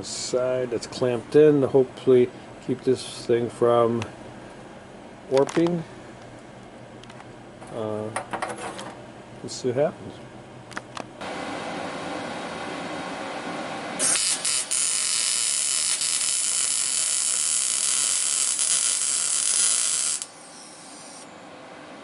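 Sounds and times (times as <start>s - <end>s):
welding arc sizzling: 14.0s - 21.3s.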